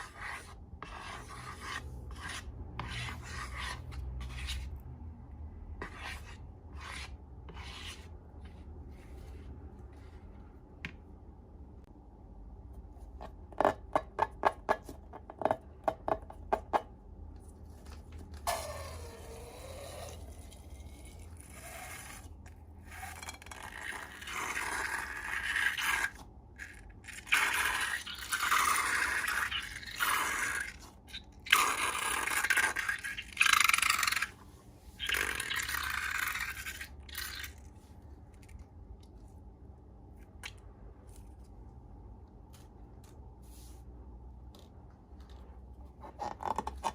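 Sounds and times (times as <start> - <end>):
slime scraping strokes: 0.0 - 4.9, 5.7 - 10.4, 18.5 - 38.6.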